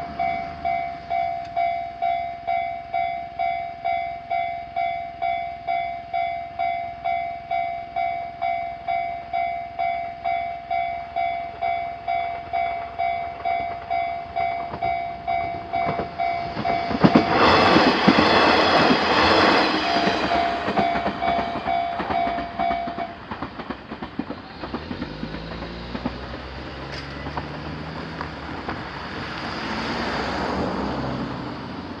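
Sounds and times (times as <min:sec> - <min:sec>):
level crossing warning bell: 0:00.0 - 0:23.4
train wheels on rails: 0:00.0 - 0:32.0
diesel engine hum: 0:24.2 - 0:32.0.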